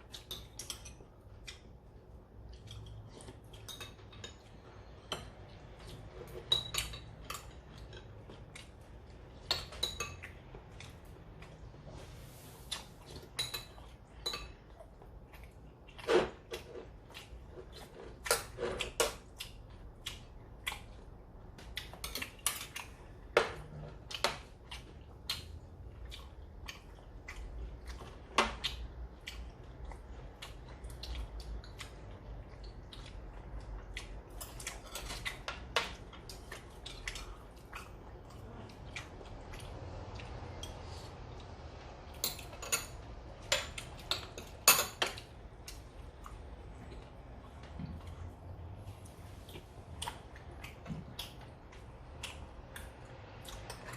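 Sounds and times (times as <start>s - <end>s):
utensils clinking on plates: 6.2s - 7.5s, 42.2s - 45.3s.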